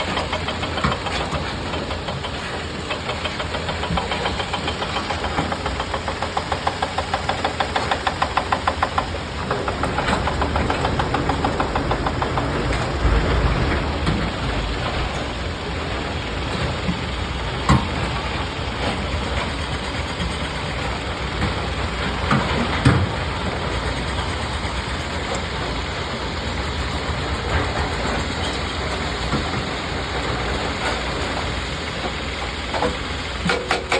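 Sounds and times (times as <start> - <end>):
excavator diesel engine running: 0.0 - 33.9.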